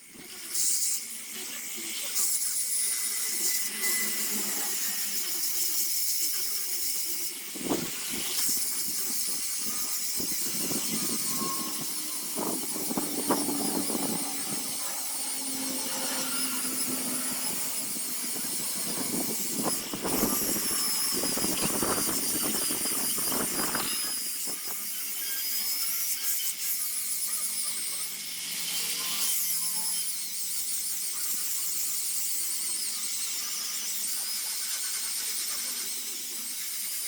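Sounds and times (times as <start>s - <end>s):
power tool whine on wood: 0.0s - 37.0s
scraping strokes: 7.6s - 24.6s.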